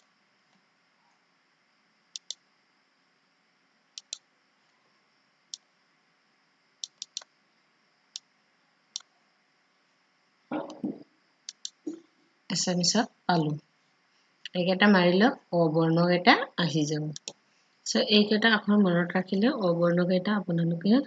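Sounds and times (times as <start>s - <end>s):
computer clicks: 2.1s - 2.4s, 4.0s - 4.3s, 6.8s - 7.3s, 8.9s - 9.1s, 10.5s - 12.0s, 17.1s - 17.4s.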